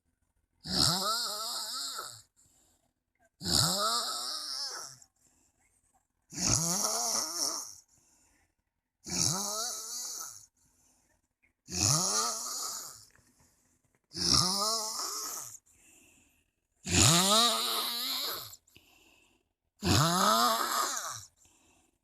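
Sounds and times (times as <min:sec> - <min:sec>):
man snoring loudly: 0:00.6 - 0:02.3, 0:03.4 - 0:05.0, 0:06.3 - 0:07.8, 0:09.0 - 0:10.5, 0:11.7 - 0:13.1, 0:14.1 - 0:15.6, 0:16.8 - 0:18.6, 0:19.8 - 0:21.3.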